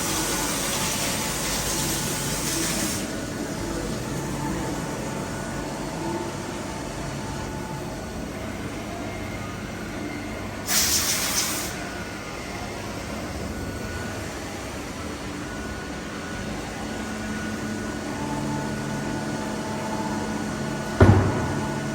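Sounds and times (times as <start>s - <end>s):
milling machine hum with whines: 0.0s - 21.9s
hiss: 10.7s - 11.8s.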